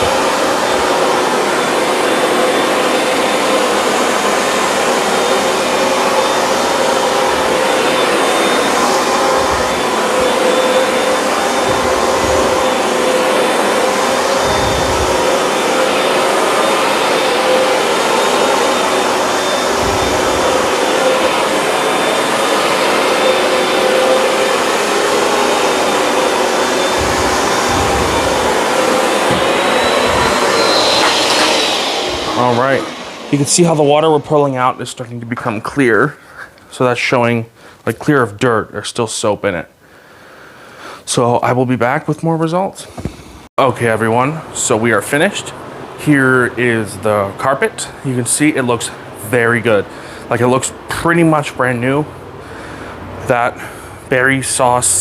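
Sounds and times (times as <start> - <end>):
carpet cleaner motor whining: 0.0 - 35.8
low bumps: 9.0 - 15.7, 19.5 - 21.4, 26.0 - 35.4.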